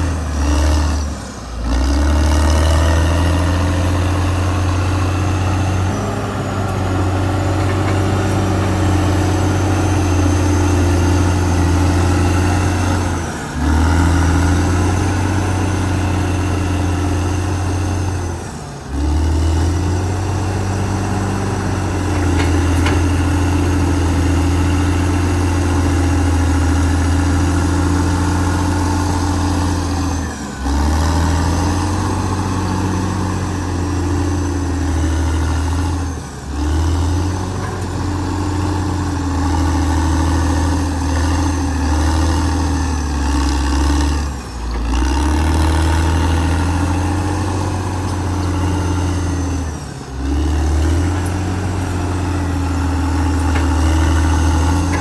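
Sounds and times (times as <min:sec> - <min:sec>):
bulldozer diesel engine droning: 0:00.0 - 0:55.0.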